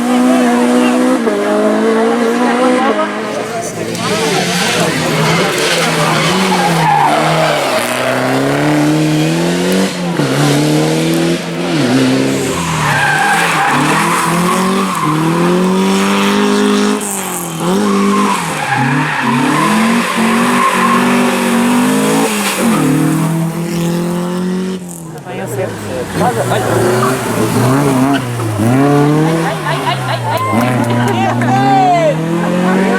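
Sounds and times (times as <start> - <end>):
rally car engine revving: 0.0 - 32.9
tyre squeal and skidding: 3.1 - 9.2, 11.7 - 24.1, 25.6 - 32.2.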